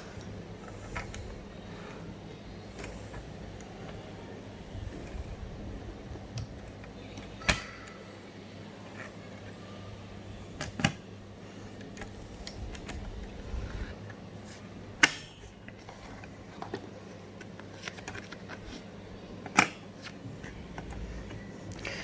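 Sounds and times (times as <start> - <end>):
faint handling noises: 0.0 - 22.0
sharp plastic clicks: 6.1 - 8.0, 15.0 - 15.4, 16.2 - 22.0.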